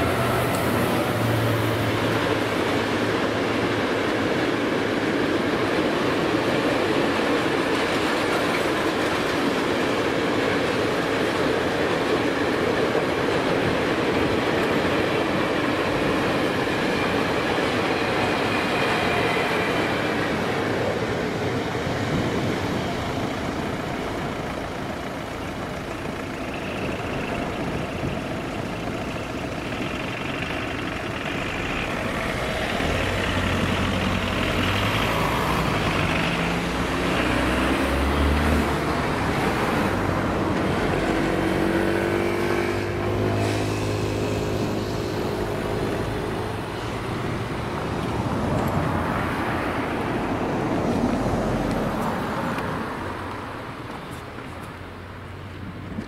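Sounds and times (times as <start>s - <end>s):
vehicle engines running: 0.0s - 56.0s
vehicle accelerating: 28.9s - 49.4s.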